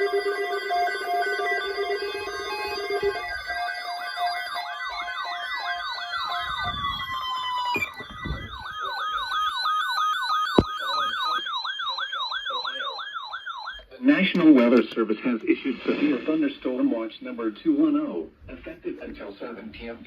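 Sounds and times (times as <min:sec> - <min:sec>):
electronic siren yelping: 0:00.0 - 0:14.0.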